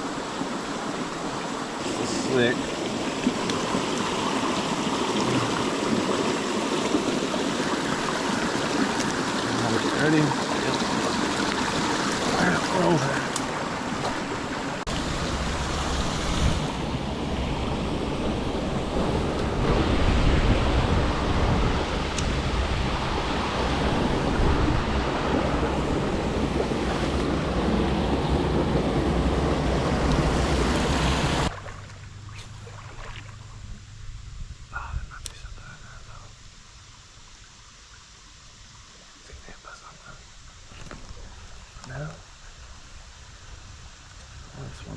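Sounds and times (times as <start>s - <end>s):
stream water rushing: 0.0s - 33.7s
wind buffeting microphone: 10.7s - 31.5s.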